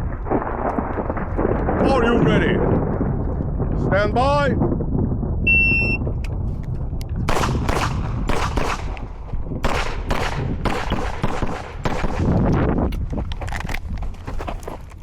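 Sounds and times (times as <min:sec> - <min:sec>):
shot timer beep: 0:05.5 - 0:06.0
pistol shots: 0:07.3 - 0:12.7.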